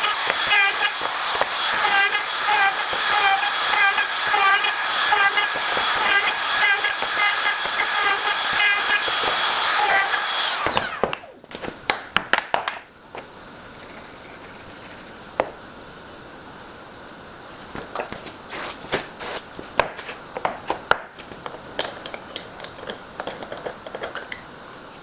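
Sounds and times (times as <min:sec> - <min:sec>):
power tool motor whining: 0:00.0 - 0:11.9.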